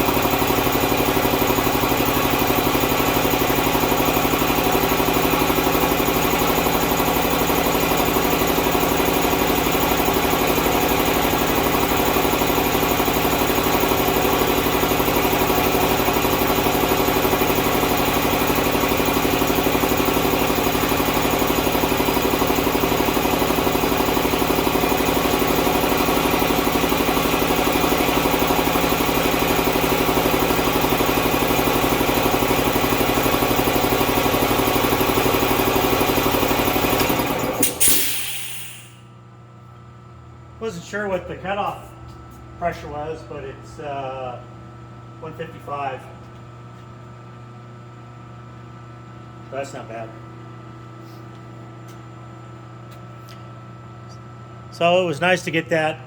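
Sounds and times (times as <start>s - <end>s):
air compressor running: 0.0s - 39.1s.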